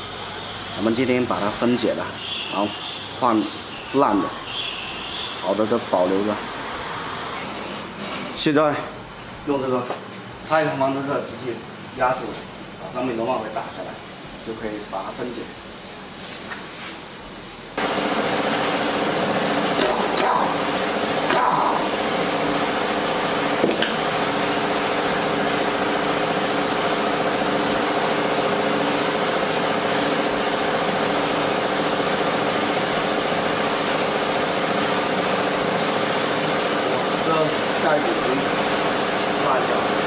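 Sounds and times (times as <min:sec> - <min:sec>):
machine motor humming: 0:17.8 - 0:40.0.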